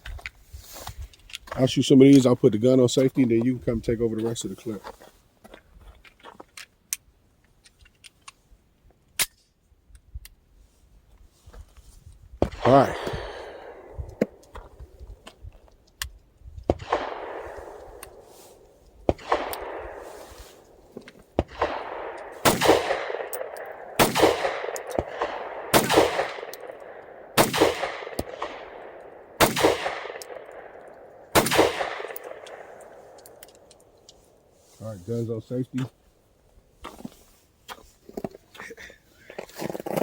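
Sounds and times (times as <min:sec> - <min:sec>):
pistol shots with echo: 0:12.4 - 0:15.0, 0:16.7 - 0:18.4, 0:19.1 - 0:33.4.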